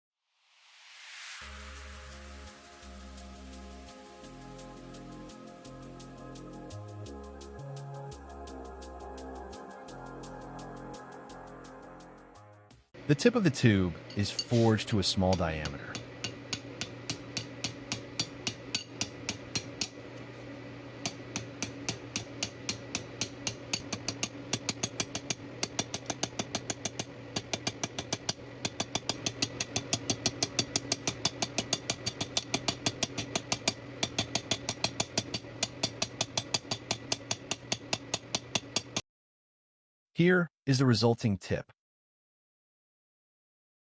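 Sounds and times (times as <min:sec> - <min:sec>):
power hammer motor hum: 0:13.0 - 0:39.0
power hammer striking steel: 0:13.6 - 0:20.2, 0:21.0 - 0:39.0.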